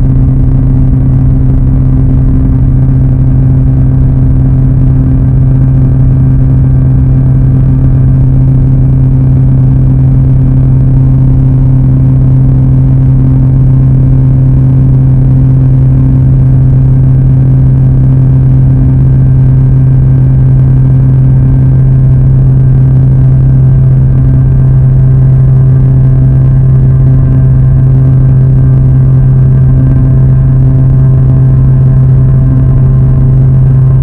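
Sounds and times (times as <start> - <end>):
noisy buzz: 0.0 - 34.0.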